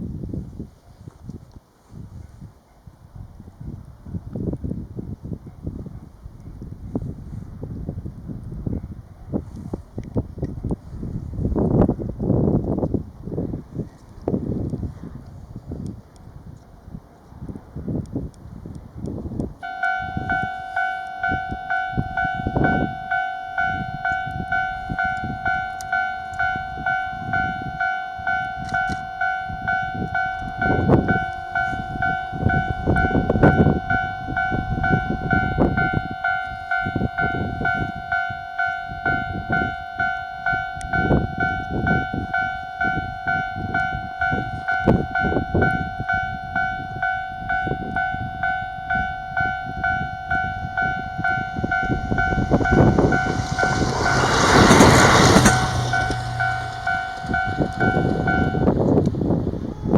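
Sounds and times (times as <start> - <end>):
level crossing warning bell: 19.6 - 59.0
low rumbling noise: 19.6 - 59.9.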